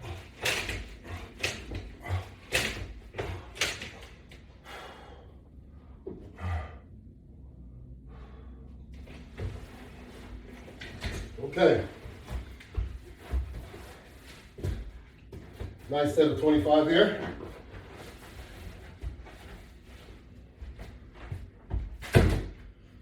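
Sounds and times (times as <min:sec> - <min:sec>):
person breathing quickly: 0:00.0 - 0:10.7.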